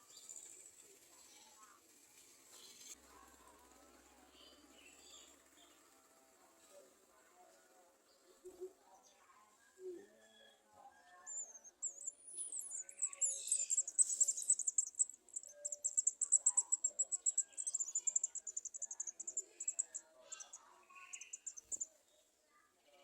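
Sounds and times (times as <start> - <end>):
sunbirds chittering trill: 11.1 - 22.0.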